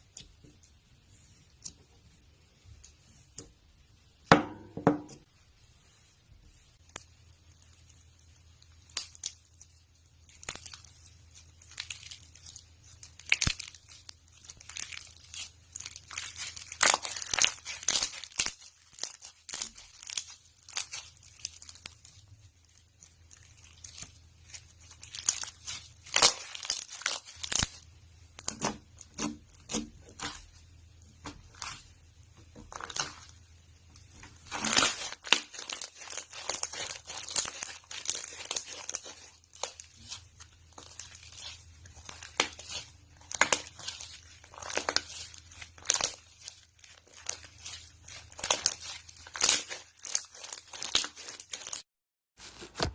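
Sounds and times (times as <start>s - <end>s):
slime squished by hand: 10.3s - 27.8s, 31.2s - 51.8s.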